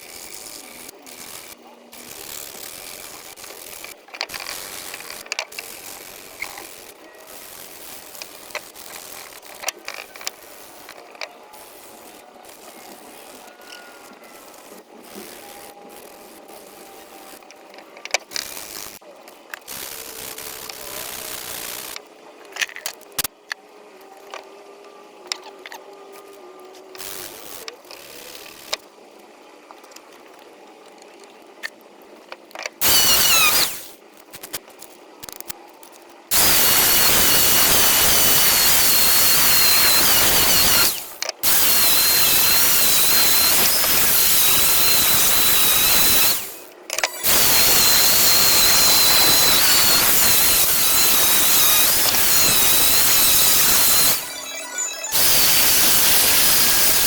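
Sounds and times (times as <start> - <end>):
power tool whining: 32.8 - 34.0, 36.3 - 57.0.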